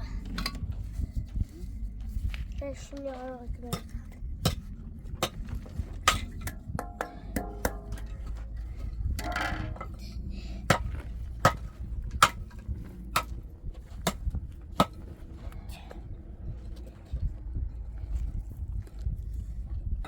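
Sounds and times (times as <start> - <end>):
low rumble: 0.0 - 20.0
sharp knocks and clacks: 4.5 - 8.5, 9.1 - 10.0.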